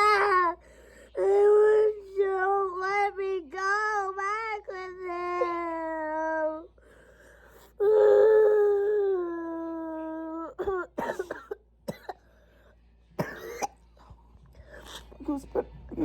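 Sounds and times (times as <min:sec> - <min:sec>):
sobs and gasping breaths: 0:00.5 - 0:02.1.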